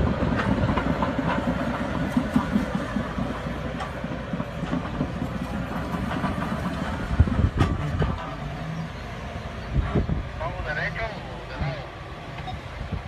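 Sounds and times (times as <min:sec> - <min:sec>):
heavy machinery rumbling: 0:00.0 - 0:13.0
clanking and rattling: 0:00.3 - 0:08.6.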